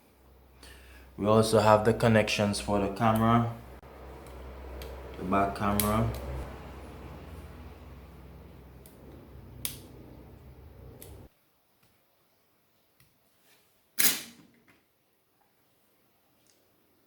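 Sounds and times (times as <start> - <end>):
low steady hum: 0.0 - 11.3.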